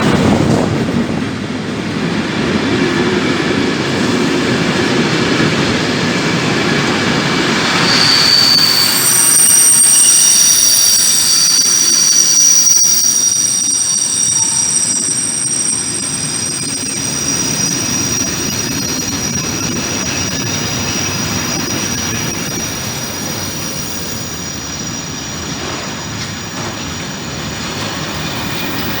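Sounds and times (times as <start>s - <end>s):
train wagons rumbling on rails: 0.0s - 29.0s
high-pitched wheel squeal: 6.3s - 29.0s.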